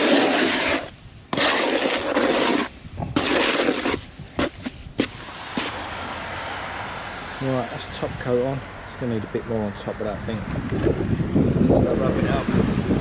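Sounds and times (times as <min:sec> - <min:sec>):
tool scraping wet render: 0:00.0 - 0:05.9.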